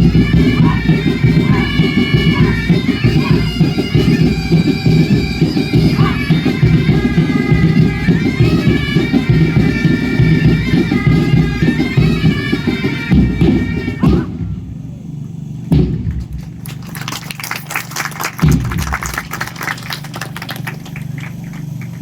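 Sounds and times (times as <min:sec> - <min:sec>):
drum beat: 0:00.0 - 0:14.8, 0:15.7 - 0:16.8, 0:18.4 - 0:19.5.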